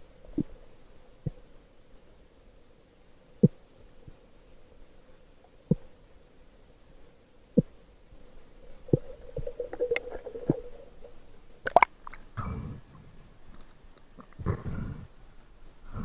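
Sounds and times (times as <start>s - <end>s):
faint steady hum: 0.0s - 16.0s
low rumbling noise: 8.5s - 12.9s
underwater sharp clicks and knocks: 8.8s - 12.2s.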